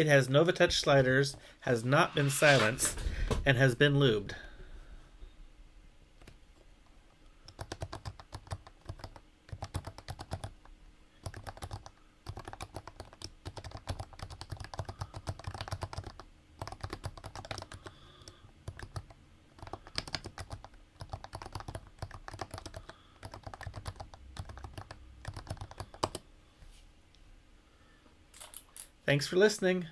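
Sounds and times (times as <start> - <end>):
keyboard typing: 7.4 - 10.6, 11.2 - 26.2.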